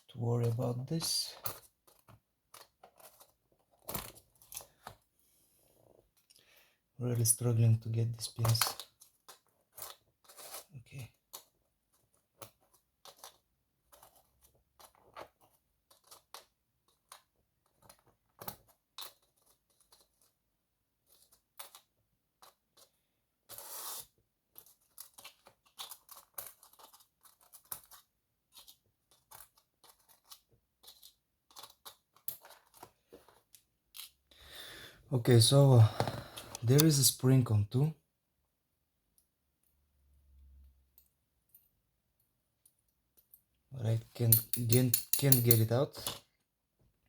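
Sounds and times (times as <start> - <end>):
metal tools clicking and scraping in lock: 44.0 - 46.2.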